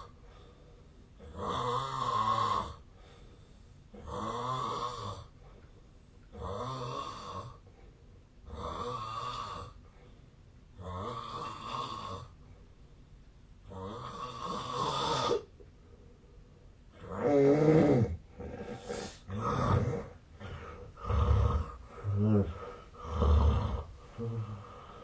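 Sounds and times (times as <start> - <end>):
man snoring heavily: 1.2 - 2.8, 4.0 - 5.3, 6.4 - 7.6, 8.5 - 9.8, 10.8 - 12.3, 13.7 - 15.4, 17.0 - 25.0.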